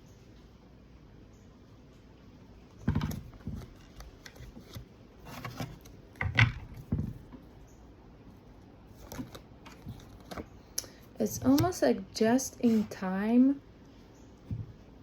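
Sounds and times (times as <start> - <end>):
handling knocks and clicks: 2.7 - 7.5, 9.0 - 10.6, 11.2 - 11.9.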